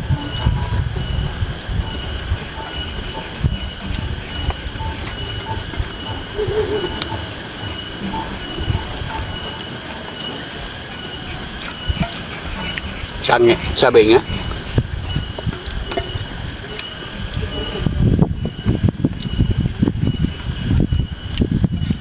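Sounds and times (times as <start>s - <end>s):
insects shrilling: 1.1s - 21.9s.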